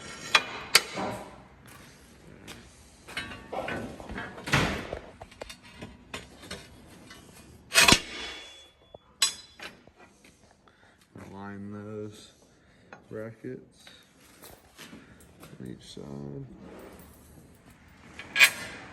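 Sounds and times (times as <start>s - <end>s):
steel parts clanking together: 0.0s - 1.3s, 5.3s - 9.8s, 18.2s - 18.9s
sharp ringing metal clank: 7.7s - 9.6s
ringing metal clink: 7.8s - 9.6s.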